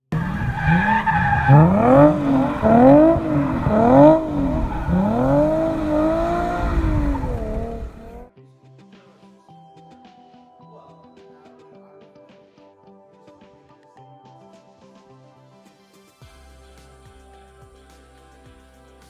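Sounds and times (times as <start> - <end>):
car engine revving: 0.0 - 8.3.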